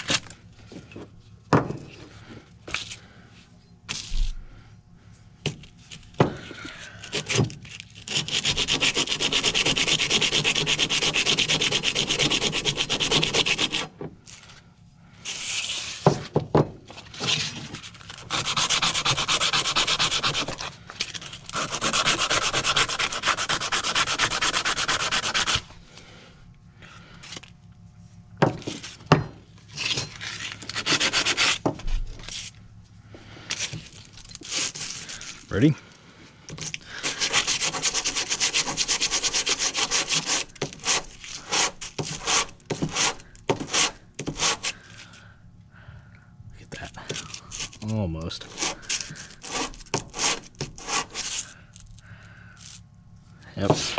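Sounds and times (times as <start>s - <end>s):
sandpaper rubbing on steel: 7.9s - 13.9s, 15.3s - 16.0s, 17.2s - 25.7s, 30.2s - 31.6s, 34.3s - 35.4s, 36.9s - 44.8s, 48.4s - 51.6s.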